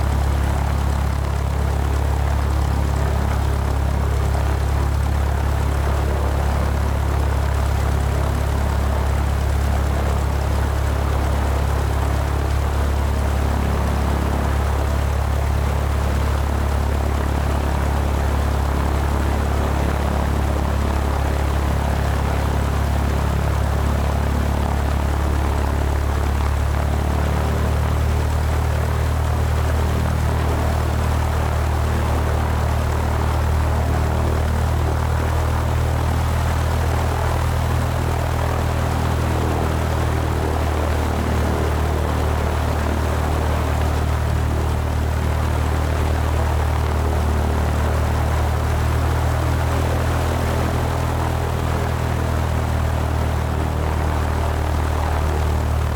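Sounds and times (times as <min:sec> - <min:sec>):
airplane engine drone: 0:00.0 - 0:55.9.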